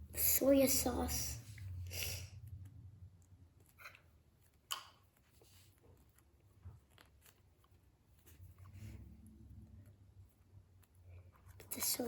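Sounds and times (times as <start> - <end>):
plastic toys clicking and rustling: 11.5 - 12.0.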